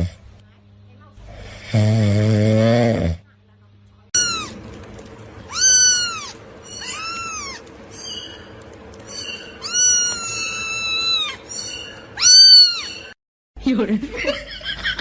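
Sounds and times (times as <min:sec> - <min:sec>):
cat meowing: 0:04.2 - 0:04.6, 0:05.5 - 0:08.2, 0:09.1 - 0:13.2.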